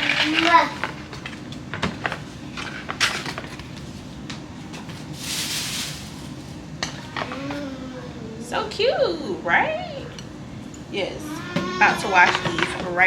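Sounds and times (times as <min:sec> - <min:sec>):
wrapping rustling: 0:02.0 - 0:06.6.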